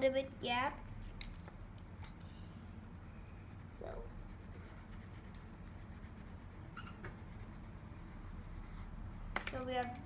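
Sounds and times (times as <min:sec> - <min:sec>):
faint pencil scratching on paper: 0:02.7 - 0:09.0.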